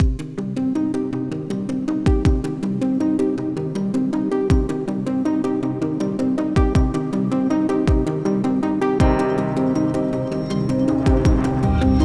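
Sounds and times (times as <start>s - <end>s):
deep kick drum: 0.0s - 0.3s, 2.1s - 2.5s, 6.6s - 7.0s, 7.9s - 8.1s, 9.0s - 9.2s, 11.1s - 12.0s
electronic music with beat: 0.0s - 0.4s, 2.0s - 2.8s, 4.4s - 12.0s.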